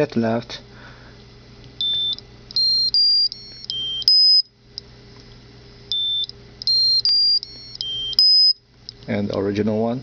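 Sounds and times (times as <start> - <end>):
buzzer playing beeping tune: 1.8 - 4.5, 5.9 - 8.6.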